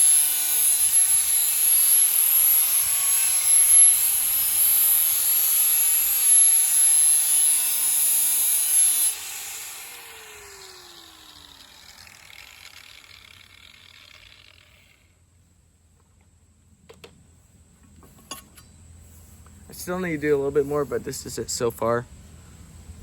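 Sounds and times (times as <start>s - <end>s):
power sander grinding steel blade: 0.0s - 15.2s.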